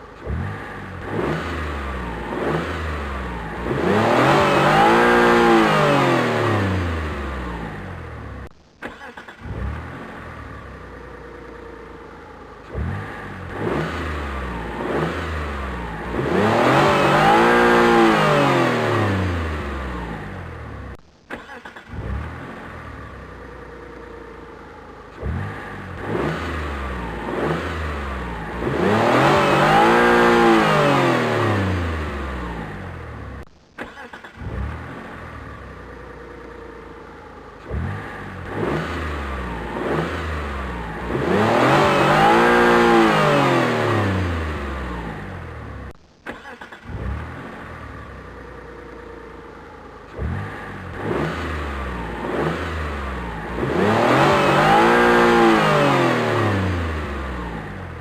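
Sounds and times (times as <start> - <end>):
car engine starting and revving: 0.0 - 58.0.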